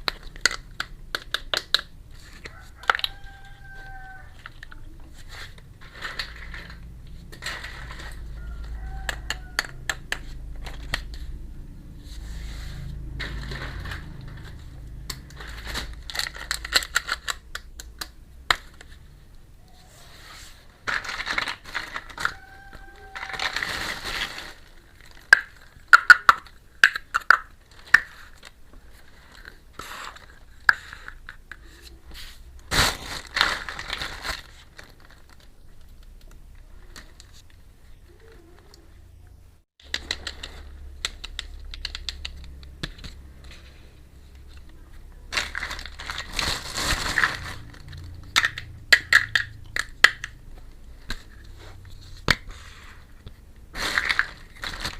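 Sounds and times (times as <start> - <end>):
plastic packaging crinkling: 12.9 - 18.0, 20.6 - 31.2, 32.6 - 38.6, 39.8 - 54.9
plastic toy pieces clicking: 16.1 - 18.8, 25.1 - 28.5, 39.8 - 43.2, 47.9 - 50.4.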